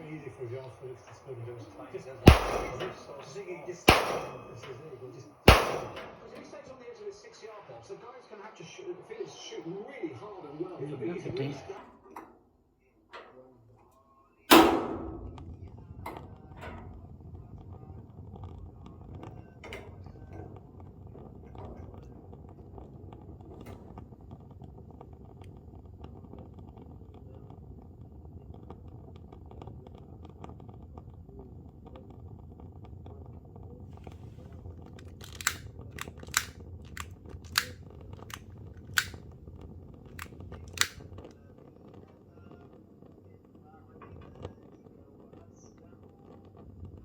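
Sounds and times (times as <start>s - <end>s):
sharp clicks: 2.2s - 3.2s, 3.9s - 4.8s, 5.5s - 6.4s, 35.0s - 39.2s, 40.1s - 41.0s.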